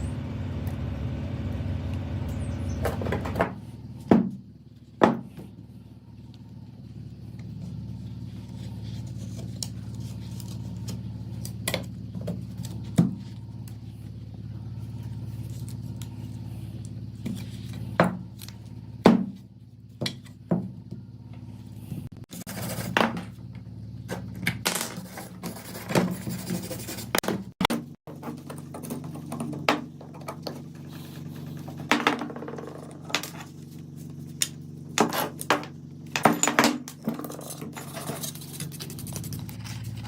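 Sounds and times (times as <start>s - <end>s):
faint hum: 0.0s - 40.0s
metal parts clicking and clinking: 34.4s - 40.0s.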